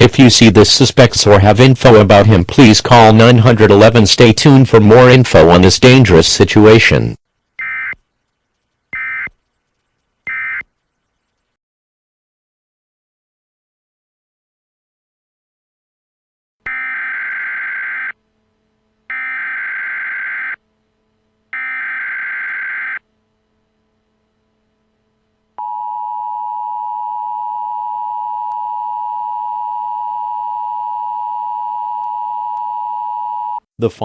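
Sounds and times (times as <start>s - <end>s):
buzzing data bursts: 7.4s - 11.5s, 16.7s - 18.2s, 19.1s - 20.6s, 21.6s - 23.0s.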